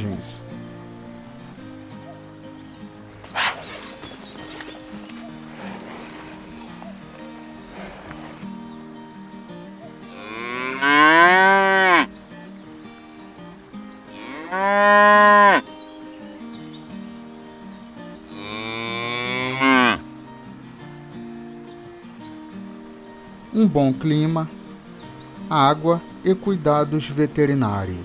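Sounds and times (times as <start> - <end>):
soft background music: 0.0 - 28.0
cattle mooing: 10.0 - 12.1, 14.2 - 15.6, 18.3 - 20.0.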